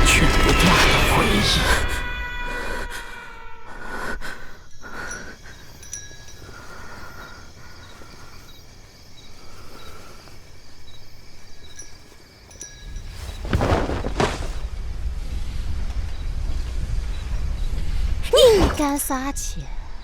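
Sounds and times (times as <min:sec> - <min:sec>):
low rumble: 0:12.9 - 0:18.3.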